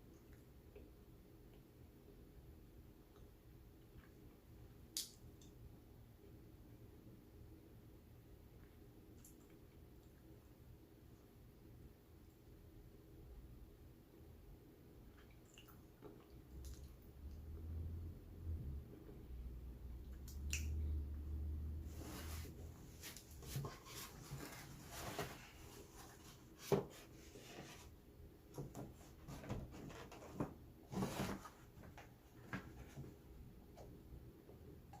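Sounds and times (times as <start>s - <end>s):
chewing and mouth noises: 15.1s - 17.1s.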